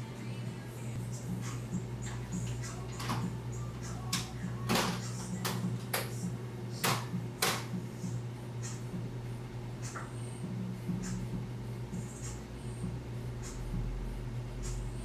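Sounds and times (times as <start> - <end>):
steady low hum: 0.0 - 15.0
sharp clicks and knocks: 4.1 - 6.2, 6.8 - 7.8.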